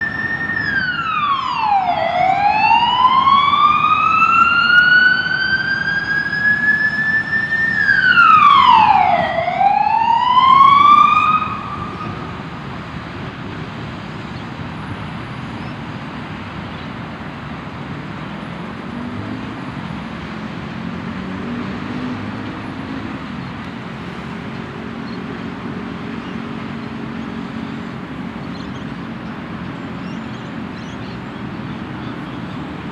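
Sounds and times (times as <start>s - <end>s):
ambulance siren wailing: 0.0s - 13.0s
steady traffic noise: 0.0s - 32.9s.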